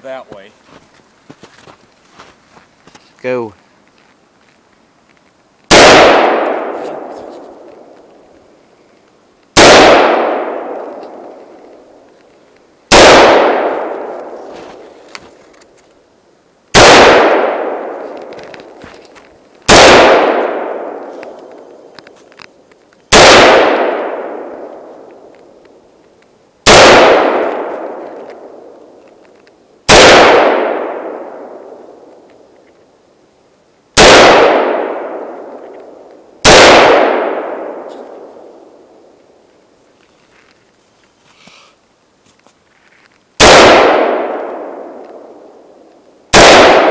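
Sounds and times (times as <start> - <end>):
rifle shots with echo: 5.7 - 8.0, 9.6 - 11.4, 12.9 - 14.4, 16.7 - 18.8, 19.6 - 21.9, 23.1 - 25.3, 26.6 - 28.8, 29.9 - 32.1, 34.0 - 39.0, 43.4 - 46.9.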